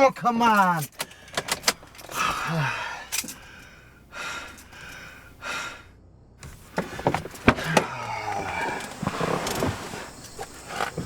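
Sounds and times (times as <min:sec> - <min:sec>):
man breathing heavily: 0:01.0 - 0:10.6
man grunting: 0:02.2 - 0:03.1, 0:07.7 - 0:08.8.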